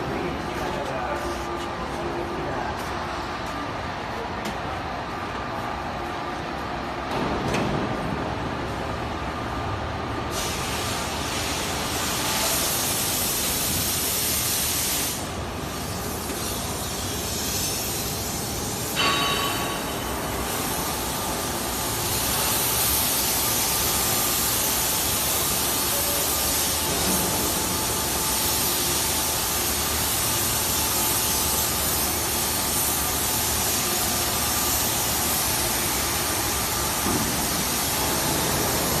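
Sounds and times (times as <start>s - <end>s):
machine hissing noise: 10.2s - 39.0s.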